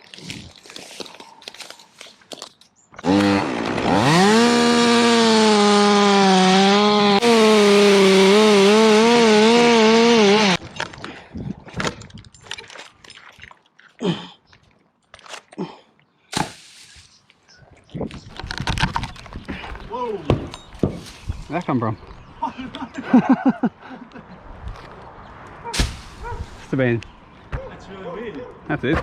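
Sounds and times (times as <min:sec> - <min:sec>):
chainsaw revving: 0:03.0 - 0:10.6.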